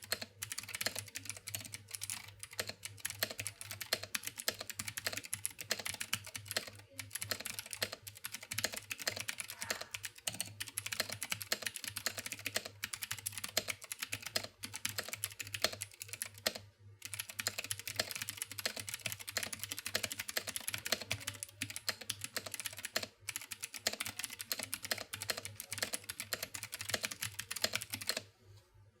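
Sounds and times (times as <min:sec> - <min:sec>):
clicky mechanical keyboard typing: 0:00.0 - 0:28.3.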